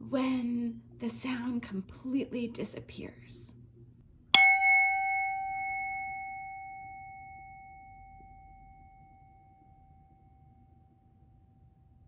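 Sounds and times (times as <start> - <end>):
singing bowl ringing: 4.4 - 11.9.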